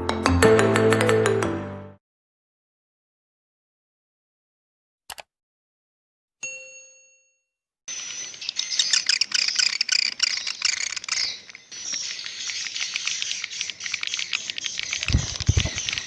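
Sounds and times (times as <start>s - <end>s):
swiftlets twittering and chirping: 7.9s - 16.0s
rapid clicking: 11.9s - 16.0s.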